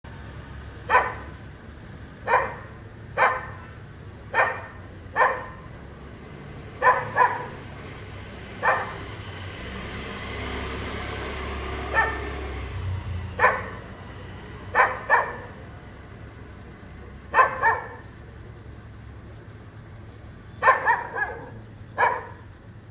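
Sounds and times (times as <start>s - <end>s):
dog barking: 0.8s - 1.4s, 2.2s - 5.8s, 6.7s - 7.8s, 8.4s - 9.2s, 11.8s - 12.6s, 13.3s - 14.0s, 14.6s - 15.6s, 17.3s - 18.2s, 20.6s - 22.5s.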